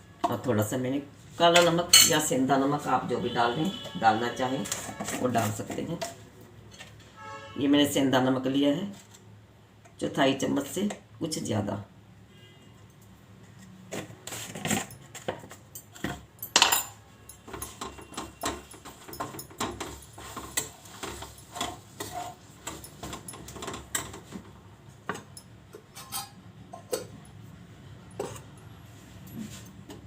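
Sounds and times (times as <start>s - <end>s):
spoon clinking against pan and bowls: 1.6s - 2.3s, 25.2s - 27.2s.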